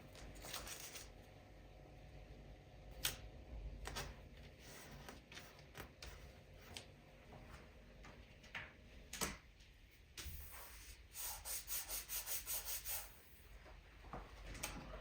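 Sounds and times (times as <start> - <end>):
rubbing strokes on a surface: 10.4 - 13.4.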